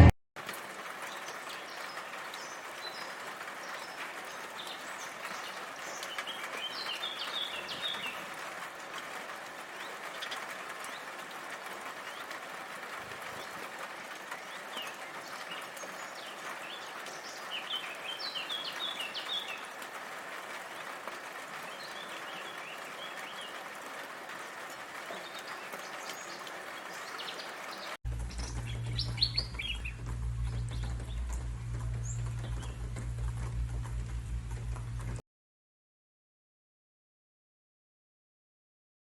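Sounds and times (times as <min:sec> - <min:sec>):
rain falling: 0:00.0 - 0:35.2
songbirds chirping: 0:01.0 - 0:35.2
low steady hum: 0:28.1 - 0:35.2.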